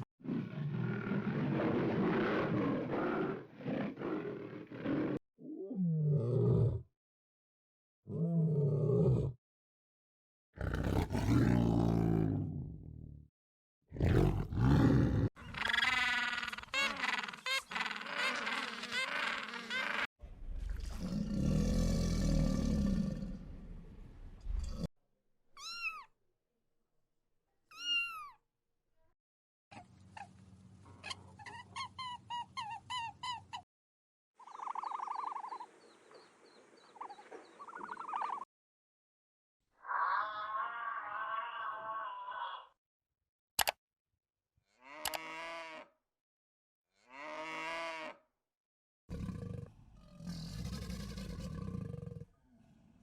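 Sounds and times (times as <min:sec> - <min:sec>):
clicking animal calls: 0:45.0 - 0:45.3.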